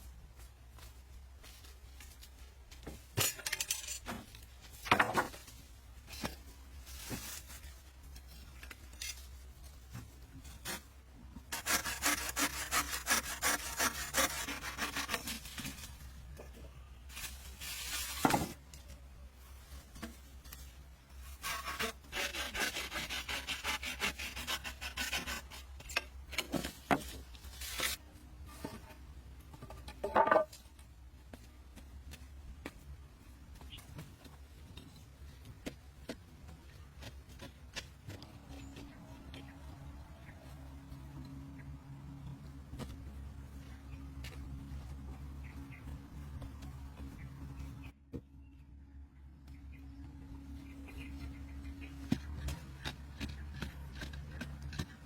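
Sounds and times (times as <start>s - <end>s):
sawing strokes on wood: 11.5s - 15.8s, 21.2s - 26.0s.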